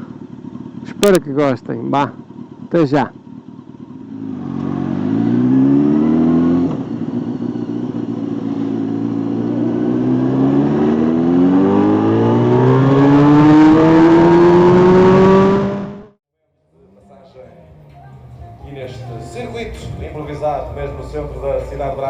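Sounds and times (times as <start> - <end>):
motorcycle engine accelerating: 0.0 - 16.2.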